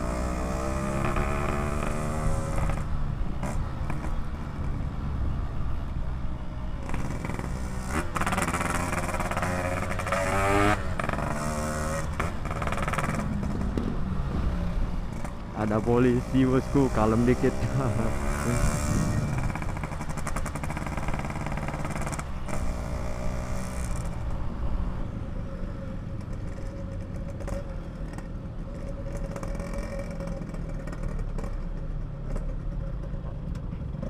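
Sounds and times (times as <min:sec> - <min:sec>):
two-stroke motorcycle engine running: 0:15.1 - 0:24.5.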